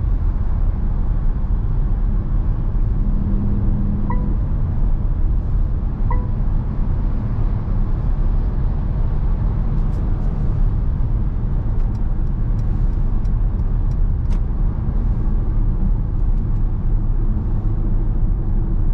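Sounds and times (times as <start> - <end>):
diesel engine drone: 0.0 - 18.9
road noise: 0.0 - 18.9
short electronic beep: 4.1 - 4.6, 6.0 - 6.5.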